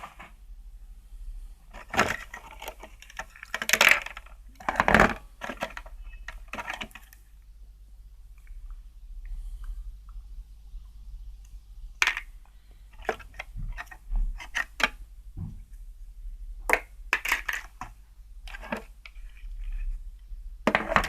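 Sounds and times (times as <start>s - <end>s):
radio casing being handled: 1.7s - 7.2s, 12.9s - 15.0s, 16.7s - 19.9s.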